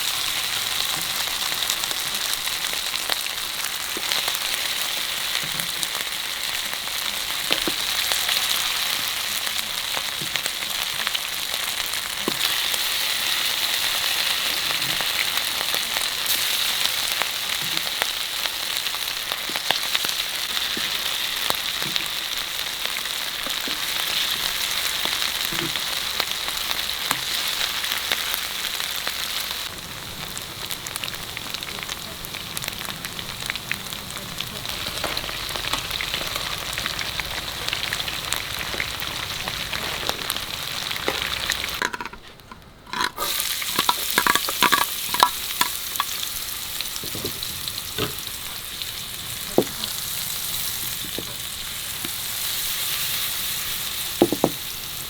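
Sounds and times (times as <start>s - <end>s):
food sizzling in a pan: 0.0s - 42.3s, 42.9s - 55.0s
utensil clicks and scrapes: 41.1s - 46.2s.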